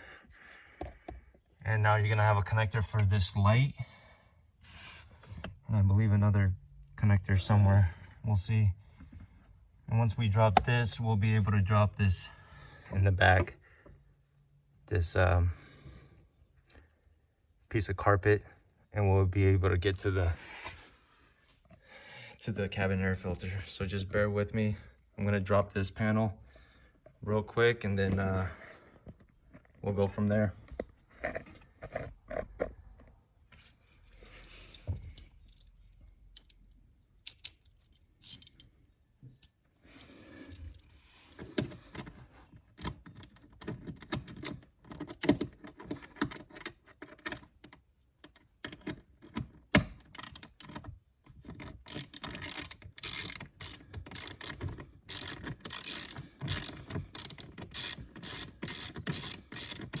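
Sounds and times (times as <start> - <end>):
hand ratchet clicking: 33.6 - 35.8, 37.3 - 38.7, 50.0 - 50.7, 51.8 - 60.0.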